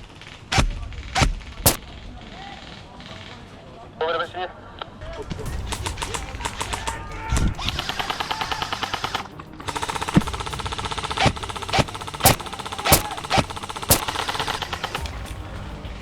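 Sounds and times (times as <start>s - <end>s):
sharp cracks: 1.7s - 1.9s, 11.5s - 14.8s
airsoft guns firing: 11.5s - 14.8s.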